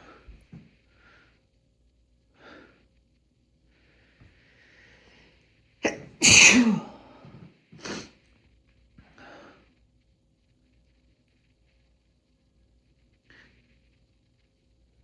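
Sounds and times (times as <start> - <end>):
man sneezing: 5.8 - 7.0.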